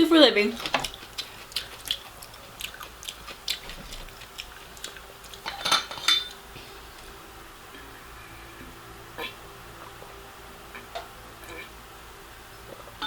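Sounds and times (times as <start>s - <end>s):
utensils clicking on dishware: 5.4s - 6.4s.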